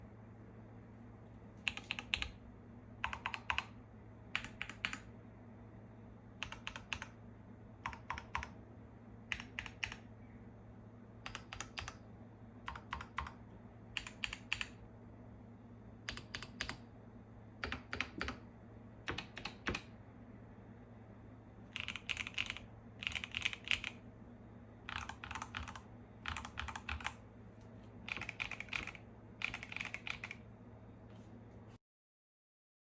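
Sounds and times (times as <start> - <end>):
mechanical keyboard typing: 1.7 - 2.4, 3.0 - 5.1, 6.4 - 7.2, 7.8 - 8.6, 9.3 - 10.1, 11.2 - 12.0, 12.7 - 13.4, 14.0 - 14.8, 16.1 - 16.8, 17.6 - 18.4, 19.1 - 19.9, 21.8 - 24.0, 24.9 - 27.2, 28.1 - 30.4.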